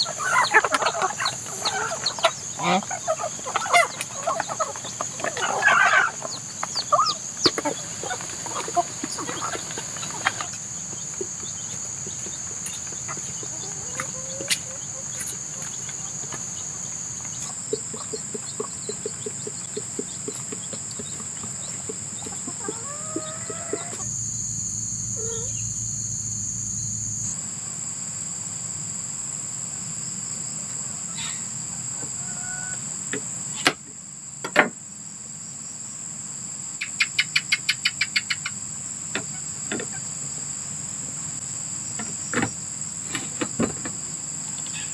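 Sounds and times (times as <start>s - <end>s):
chickens clucking: 0.0s - 24.5s, 31.1s - 32.9s
crickets chirring: 0.0s - 44.9s.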